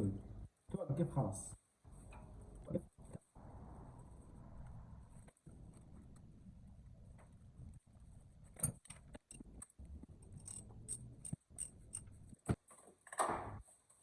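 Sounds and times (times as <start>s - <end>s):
clicks and knocks of tools: 8.6s - 13.3s.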